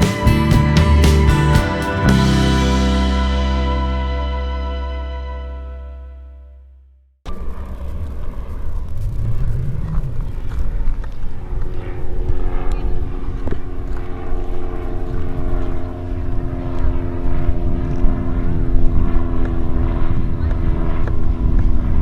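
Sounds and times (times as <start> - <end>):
drone propellers humming: 0.0 - 5.9
wind rumble on microphone: 7.4 - 22.0.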